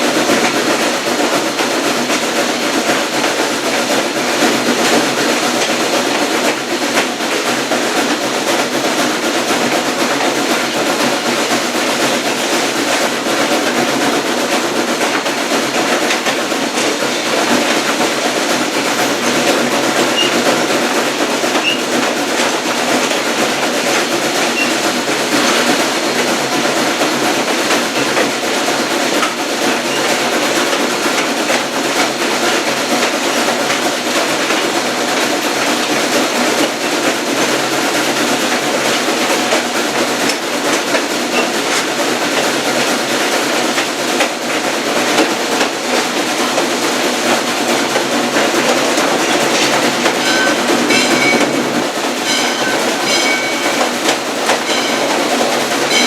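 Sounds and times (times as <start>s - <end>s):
train wheels rumbling on rails: 0.0s - 56.0s
rapid high ringing: 50.1s - 56.0s.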